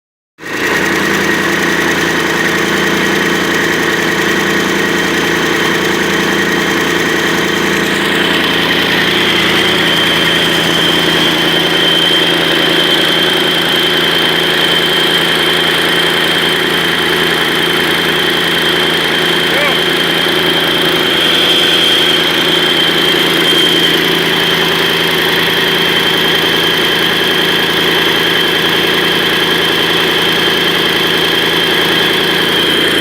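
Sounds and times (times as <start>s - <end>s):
diesel engine running: 0.4s - 33.0s
high whine: 0.9s - 26.5s.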